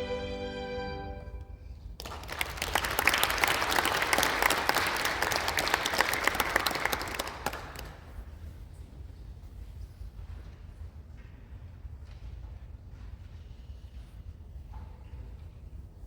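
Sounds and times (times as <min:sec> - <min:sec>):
music: 0:00.0 - 0:01.6
audience applauding: 0:02.0 - 0:08.1.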